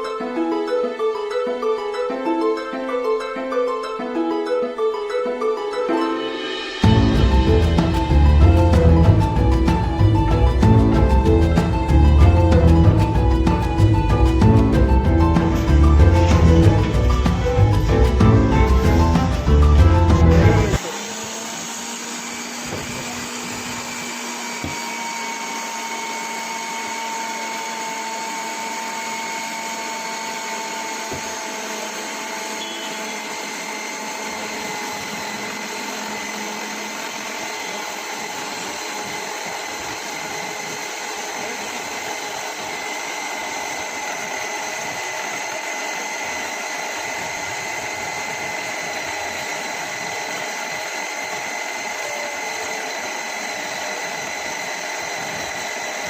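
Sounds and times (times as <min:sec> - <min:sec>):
mixer grinder motor whirring: 0:00.0 - 0:56.0
motor whine: 0:00.0 - 0:56.0.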